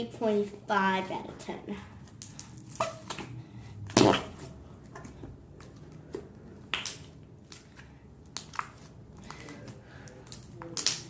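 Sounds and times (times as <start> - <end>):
slime squished by hand: 6.6 - 11.0.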